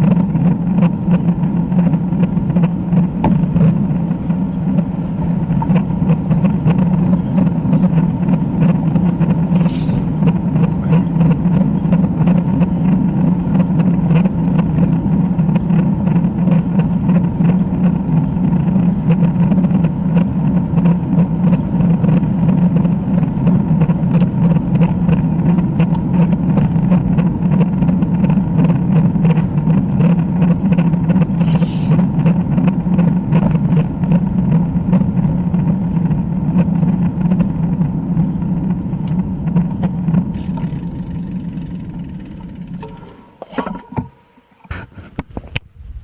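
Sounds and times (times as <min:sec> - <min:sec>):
wind rumble on microphone: 0:00.0 - 0:46.0
brief hiss: 0:09.5 - 0:10.2, 0:31.4 - 0:32.1.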